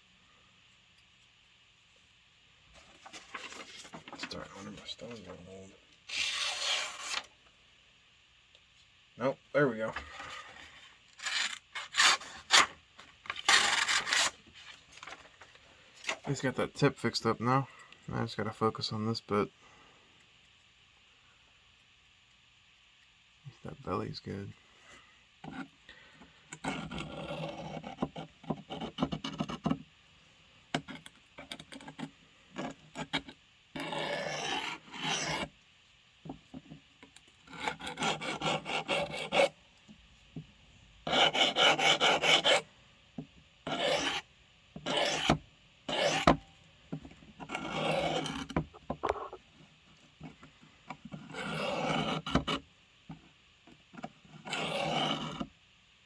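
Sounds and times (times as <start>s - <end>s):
blade scraping on sharpening stone: 33.8s - 35.4s, 43.7s - 44.2s, 44.8s - 46.2s, 51.4s - 52.2s.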